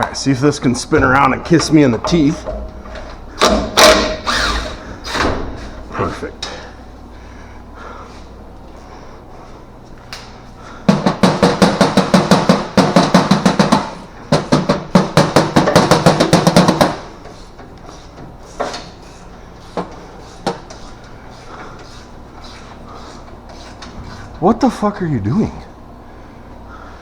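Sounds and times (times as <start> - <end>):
impact wrench hammering: 0.9 - 5.8, 10.8 - 17.2.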